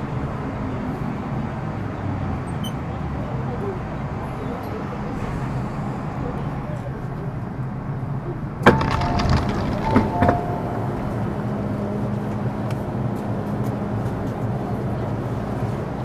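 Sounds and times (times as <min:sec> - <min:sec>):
train car low hum: 0:03.0 - 0:16.0
sharp clack: 0:08.6 - 0:11.2.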